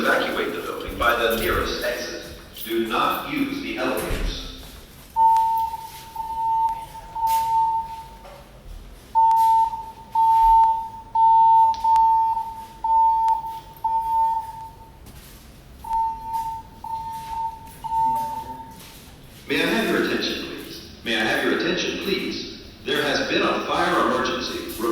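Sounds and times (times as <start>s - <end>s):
pulsed high alarm tone: 5.2s - 8.2s, 9.2s - 15.0s, 15.8s - 18.9s.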